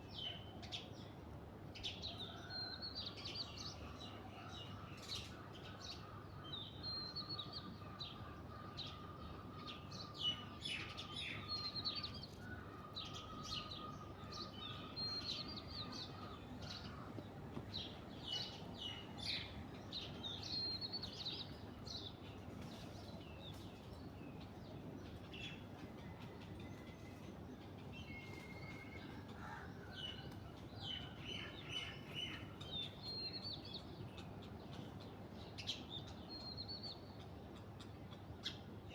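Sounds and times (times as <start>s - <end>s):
birds chirping: 1.8s - 38.9s.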